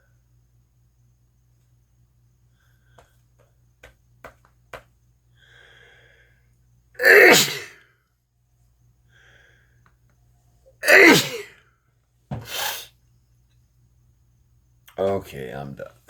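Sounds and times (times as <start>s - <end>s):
person sneezing: 7.0s - 7.8s, 10.8s - 11.6s, 12.4s - 12.9s.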